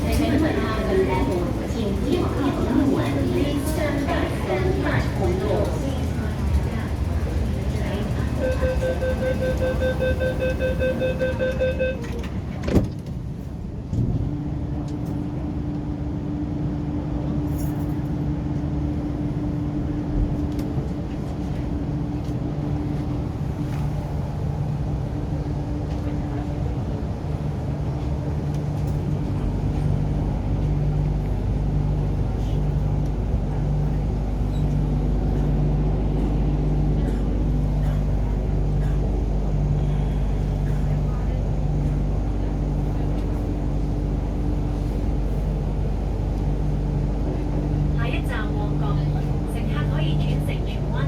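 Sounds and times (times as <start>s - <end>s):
train traction motor hum: 0.0s - 51.0s
train door warning beeps: 8.2s - 12.4s
train doors shutting knock: 8.5s - 13.2s.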